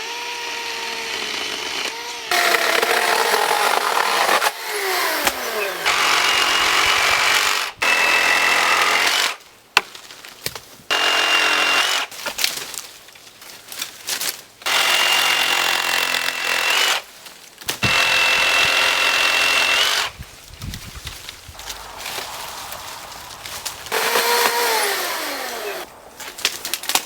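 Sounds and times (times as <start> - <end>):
power saw cutting branches: 0.0 - 9.4, 10.9 - 12.8, 13.8 - 27.0.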